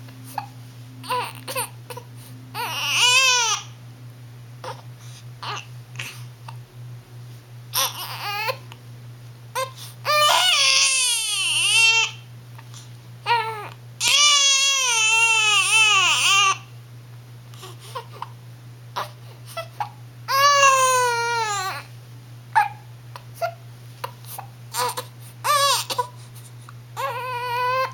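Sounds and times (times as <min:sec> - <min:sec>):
baby crying: 0:01.0 - 0:02.0, 0:02.6 - 0:03.7, 0:05.4 - 0:06.1, 0:07.8 - 0:08.6, 0:09.6 - 0:12.2, 0:13.3 - 0:16.7, 0:19.0 - 0:21.9, 0:24.7 - 0:26.1, 0:27.0 - 0:27.9.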